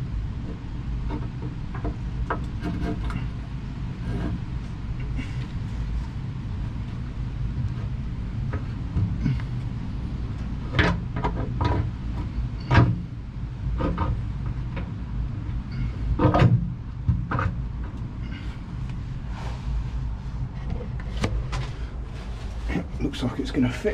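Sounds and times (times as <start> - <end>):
steady low hum: 0.0 - 23.9
deck panel knocks and clunks: 10.6 - 13.2, 16.1 - 18.0.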